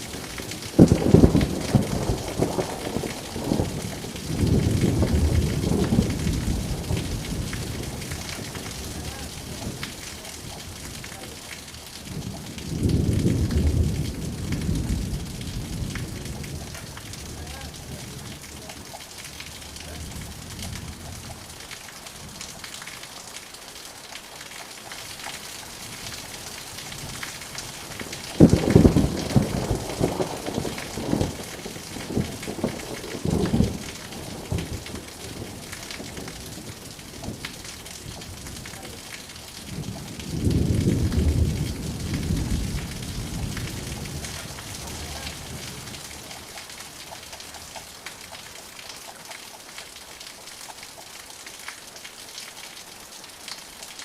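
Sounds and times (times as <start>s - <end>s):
thunder clap and rumble: 0.0s - 21.6s, 25.9s - 46.6s
rain hissing: 0.0s - 54.0s.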